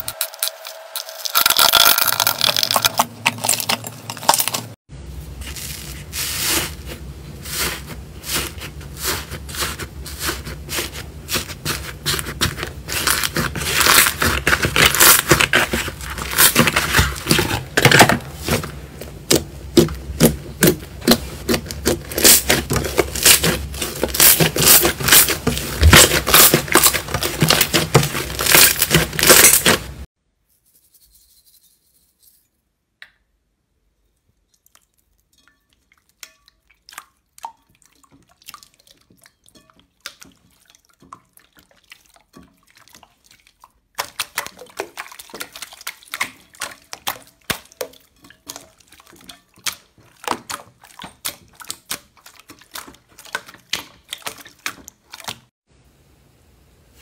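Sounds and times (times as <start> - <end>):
slime crackling and popping: 12.8 - 18.0, 21.4 - 29.9.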